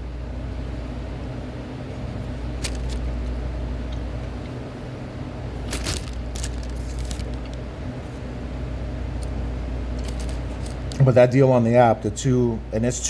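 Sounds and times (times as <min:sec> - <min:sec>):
car cabin engine hum: 0:05.2 - 0:07.9.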